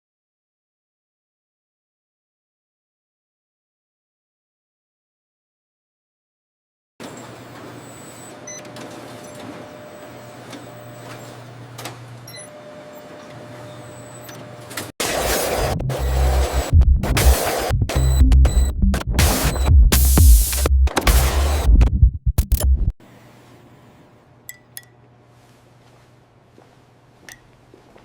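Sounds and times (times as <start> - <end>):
factory machinery whirring: 7.0 - 22.6
loud electronic music: 15.0 - 22.9
low hum: 15.2 - 23.0.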